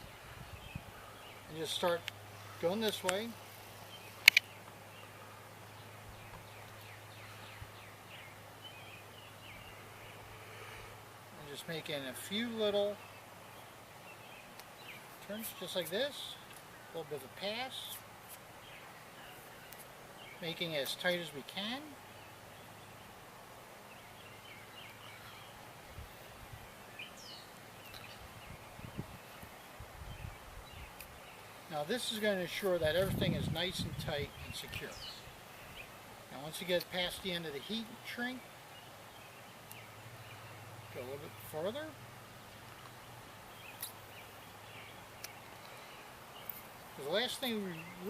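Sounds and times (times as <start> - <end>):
birds chirping: 0.0 - 48.0
faint outdoor background noise: 0.0 - 48.0.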